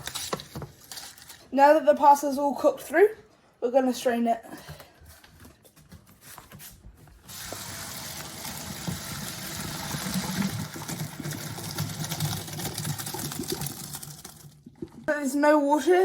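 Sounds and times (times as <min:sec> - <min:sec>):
water pouring through colander: 0:07.3 - 0:15.2.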